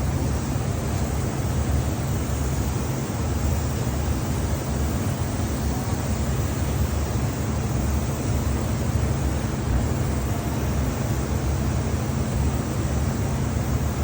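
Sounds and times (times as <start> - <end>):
faint hum: 0.0 - 14.0.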